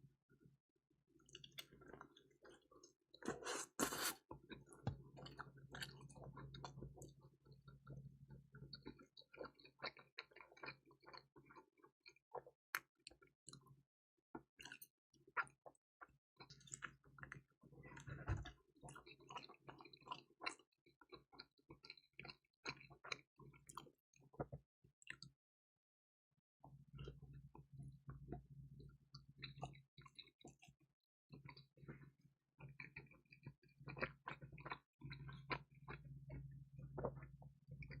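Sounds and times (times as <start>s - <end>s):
chewing crispy pizza: 1.2s - 13.8s, 14.4s - 25.4s, 26.9s - 38.0s
wet mouth sounds: 3.2s - 4.3s.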